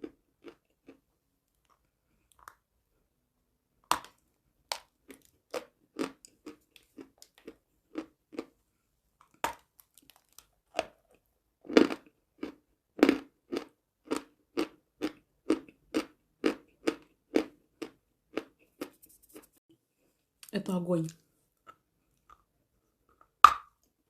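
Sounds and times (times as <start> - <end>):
chalk being bitten and chewed: 4.0 - 8.5, 9.2 - 19.6.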